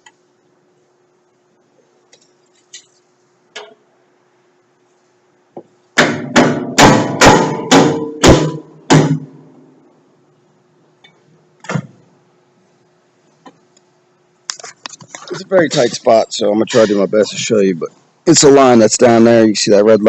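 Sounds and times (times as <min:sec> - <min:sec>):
hammer striking metal: 0:06.0 - 0:09.4.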